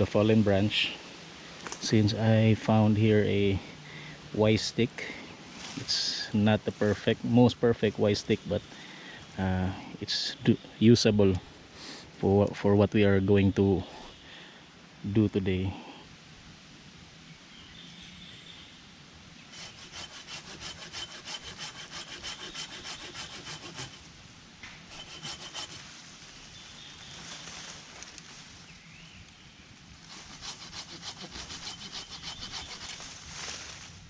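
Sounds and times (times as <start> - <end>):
hand saw cutting wood: 19.5 - 24.1, 24.9 - 25.9, 30.1 - 33.1.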